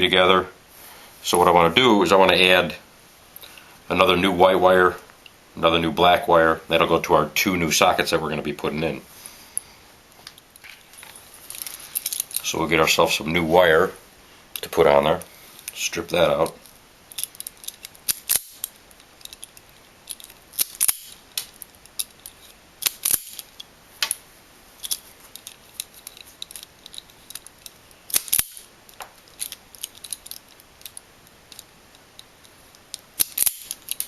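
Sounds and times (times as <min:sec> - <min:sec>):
wire strippers snipping: 0:17.2 - 0:24.2, 0:24.9 - 0:34.0.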